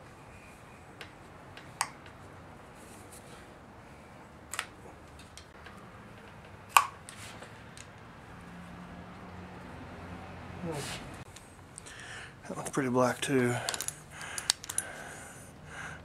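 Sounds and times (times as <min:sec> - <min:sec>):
hand tools clicking on metal engine parts: 0:13.2 - 0:15.1.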